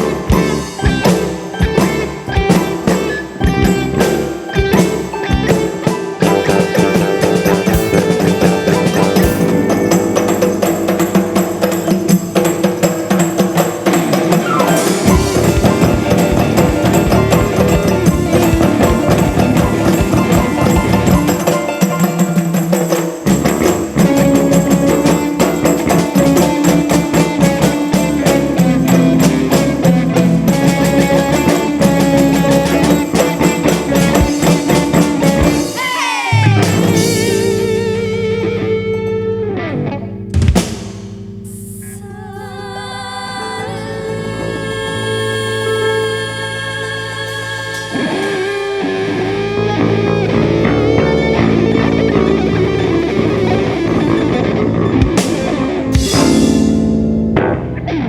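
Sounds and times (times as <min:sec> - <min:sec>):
sliding bending tones: 0:00.0 - 0:35.8
drums and percussion: 0:00.0 - 0:38.4, 0:40.3 - 0:41.3, 0:47.7 - 0:57.8
sustained pitched instruments: 0:00.0 - 0:44.9.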